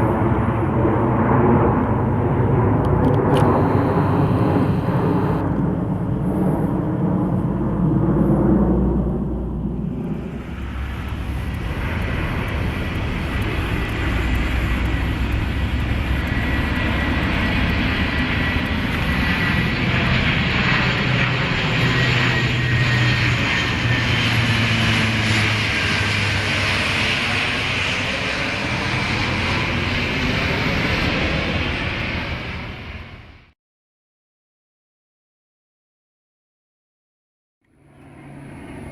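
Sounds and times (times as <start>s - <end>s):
low engine hum: 0.0s - 33.5s
airplane engines whining: 0.0s - 33.6s, 37.6s - 38.9s.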